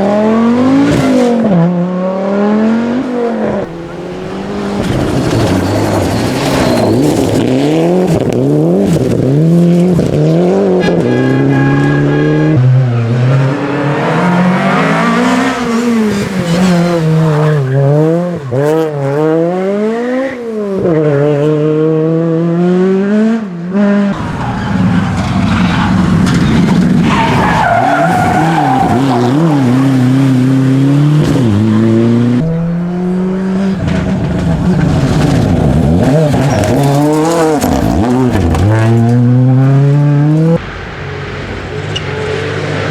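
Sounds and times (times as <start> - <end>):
car engine revving hard: 0.0 - 42.9.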